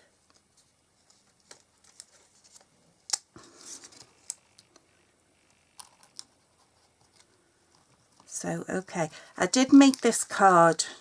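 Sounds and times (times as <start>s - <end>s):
paper rustling: 0.3s - 4.4s.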